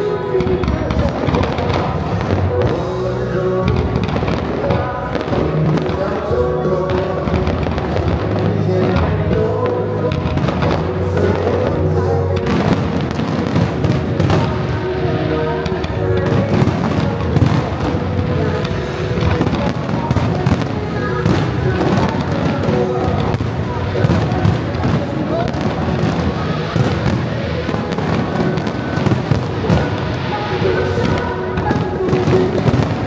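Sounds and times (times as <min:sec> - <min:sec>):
fireworks bursting: 0:00.0 - 0:33.0
music: 0:00.0 - 0:33.0.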